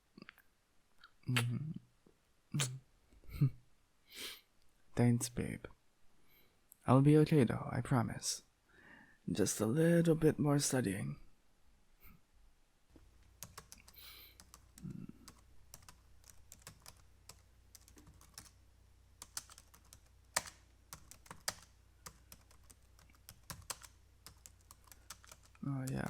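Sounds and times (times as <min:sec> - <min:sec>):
faint low hum: 0:04.6 - 0:26.0
keyboard typing: 0:13.2 - 0:26.0.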